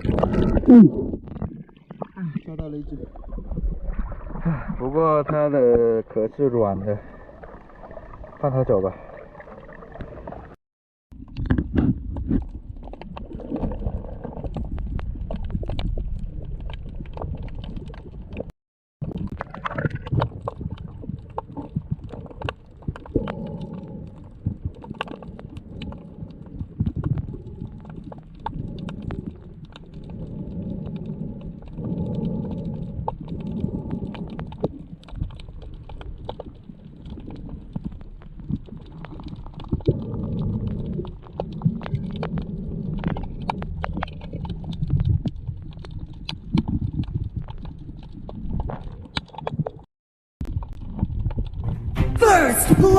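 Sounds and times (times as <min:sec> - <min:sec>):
underwater rumble: 0:00.0 - 0:52.9
sharp clicks and crackles: 0:11.2 - 0:51.8.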